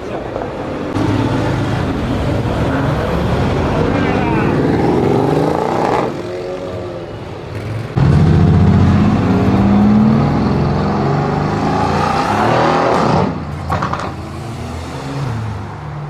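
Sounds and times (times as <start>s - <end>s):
car engine accelerating: 7.9s - 15.5s.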